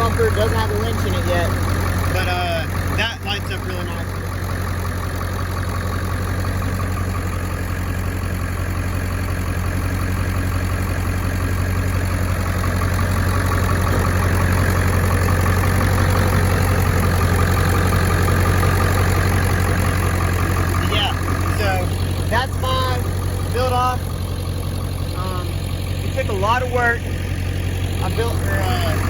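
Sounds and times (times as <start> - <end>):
diesel truck engine idling: 0.0 - 29.0.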